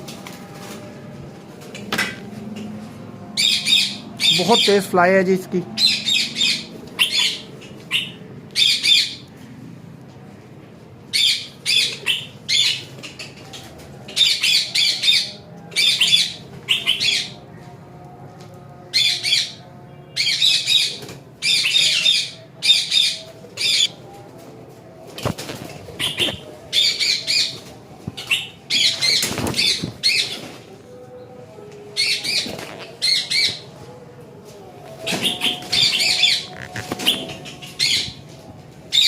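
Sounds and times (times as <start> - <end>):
parrot squawking: 5.8 - 9.2, 20.2 - 23.9, 26.0 - 27.5, 35.2 - 38.2.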